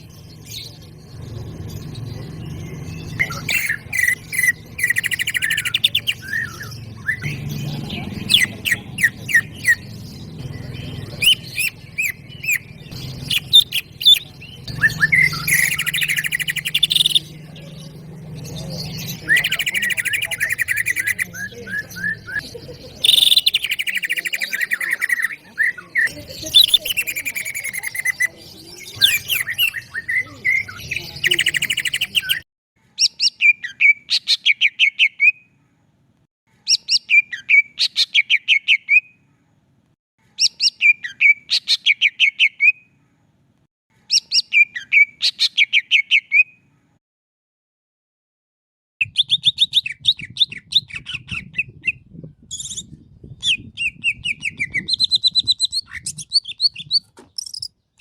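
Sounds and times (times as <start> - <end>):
bird singing: 0.0 - 32.4, 49.0 - 58.0.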